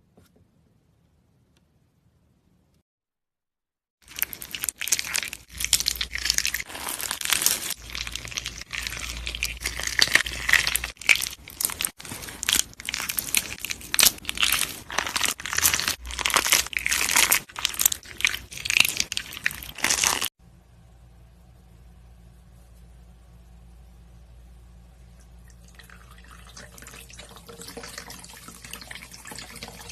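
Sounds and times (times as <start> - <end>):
crumbly material crunching: 4.0 - 20.3.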